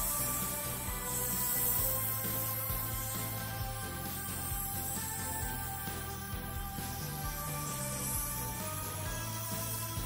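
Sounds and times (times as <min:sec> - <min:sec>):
background music with low beat: 0:00.0 - 0:10.0.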